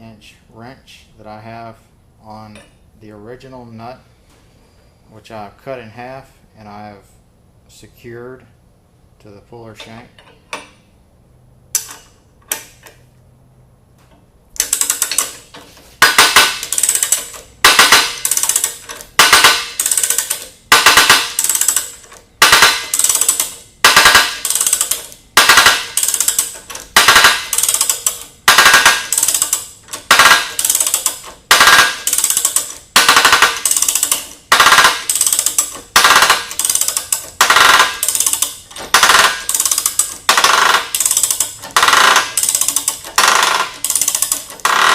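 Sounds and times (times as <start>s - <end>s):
ratchet wrench clicking: 14.6s - 44.9s.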